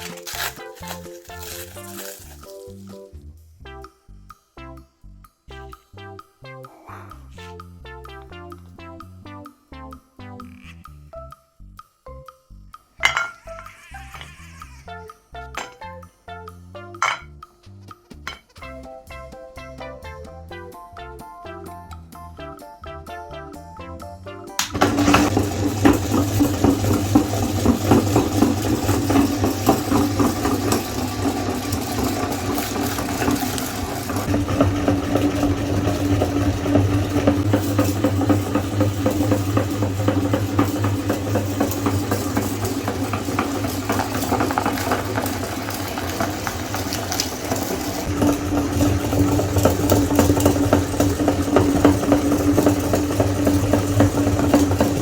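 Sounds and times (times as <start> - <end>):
electric meat grinder motor hum: 0.0 - 2.9, 13.4 - 15.1, 24.6 - 55.0
cookies crackling and rattling: 0.0 - 3.2, 13.0 - 15.0, 15.6 - 15.9, 24.6 - 55.0.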